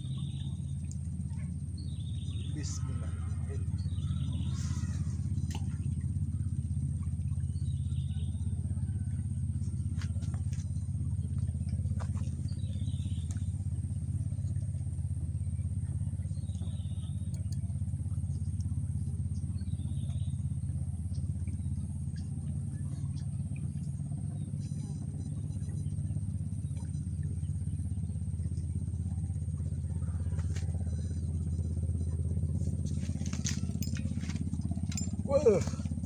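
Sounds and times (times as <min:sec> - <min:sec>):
low motor hum: 0:00.0 - 0:36.0.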